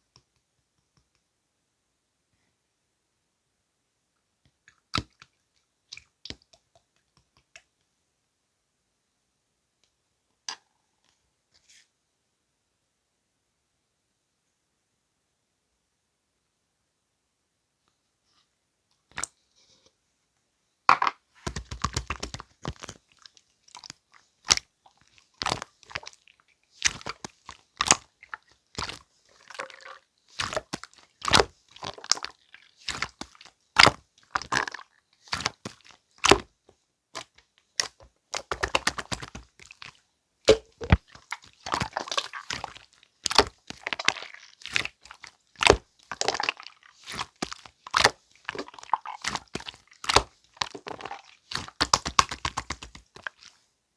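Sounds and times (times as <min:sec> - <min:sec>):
slime squelching and popping: 0:21.0 - 0:36.6, 0:37.2 - 0:53.6.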